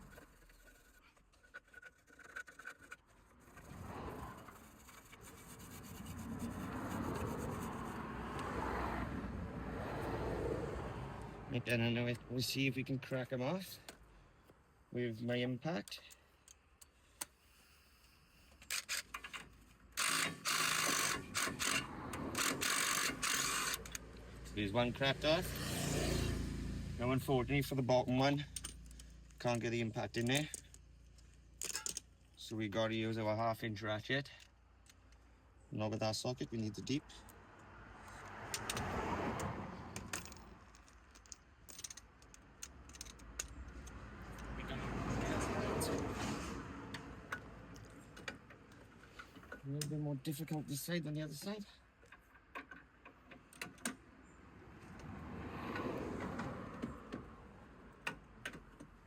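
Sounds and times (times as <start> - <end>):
metallic clicks of hand tools: 37.2 - 44.5.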